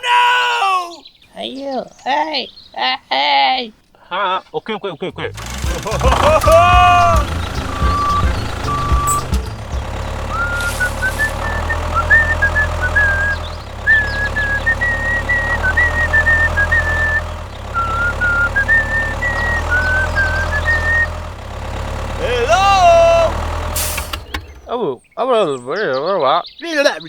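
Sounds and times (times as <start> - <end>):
high-pitched melody: 5.3 - 11.2.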